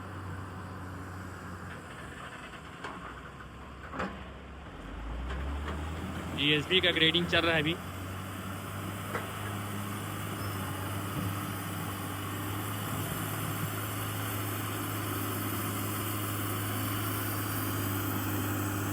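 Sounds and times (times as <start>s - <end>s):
diesel engine humming: 4.4s - 18.9s.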